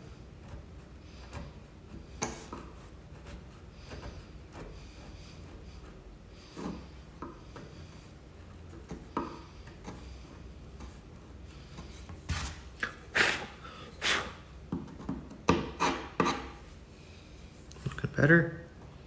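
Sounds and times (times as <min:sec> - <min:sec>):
chisel scraping glue from wood: 0:14.2 - 0:16.6.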